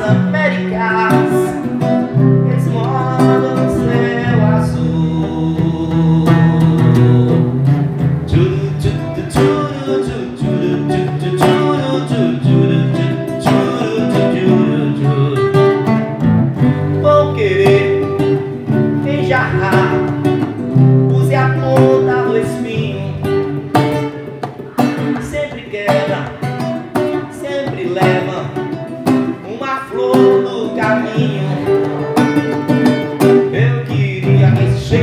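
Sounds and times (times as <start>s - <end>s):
acoustic guitar strumming: 0.0s - 35.0s.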